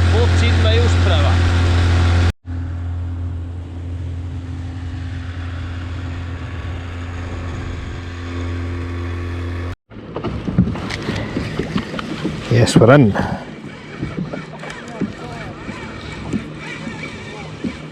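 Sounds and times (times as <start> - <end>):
outboard motor running: 0.0 - 17.9
knocks and rustles: 10.0 - 12.4.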